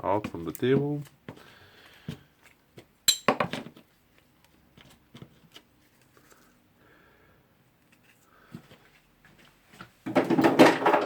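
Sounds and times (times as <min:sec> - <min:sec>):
small metal parts clinking: 0:03.1 - 0:03.4.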